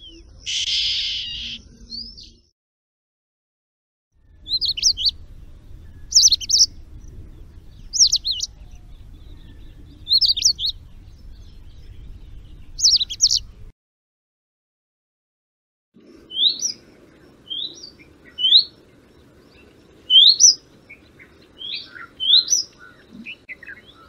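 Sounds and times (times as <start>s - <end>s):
small bird chirping: 0.0s - 2.5s, 4.2s - 13.7s, 16.2s - 24.0s
faint low hum: 4.2s - 13.7s.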